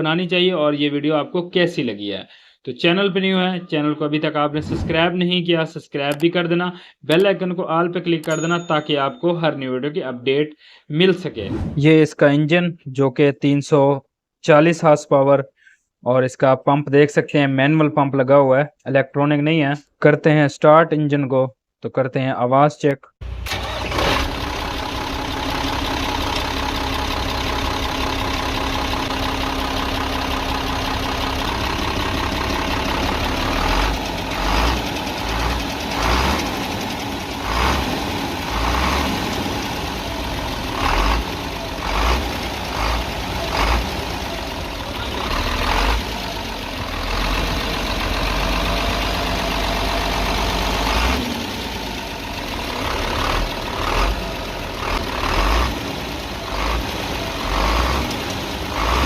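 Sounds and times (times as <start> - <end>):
diesel truck engine revving: 23.2 - 59.0.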